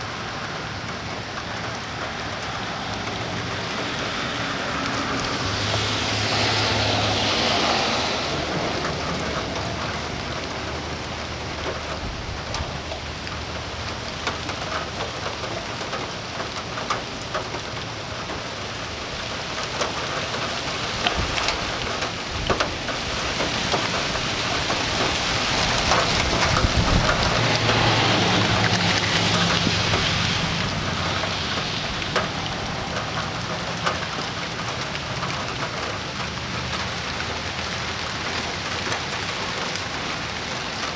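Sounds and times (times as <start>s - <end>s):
rain falling: 0.0s - 40.9s
sharp raindrop ticks: 0.0s - 40.9s
thunder rumbling: 20.4s - 35.2s.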